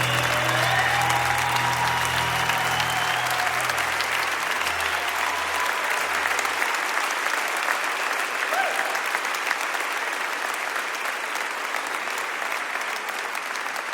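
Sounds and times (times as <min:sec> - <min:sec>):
low sustained accompaniment notes: 0:00.0 - 0:06.6
audience applauding: 0:00.0 - 0:13.9.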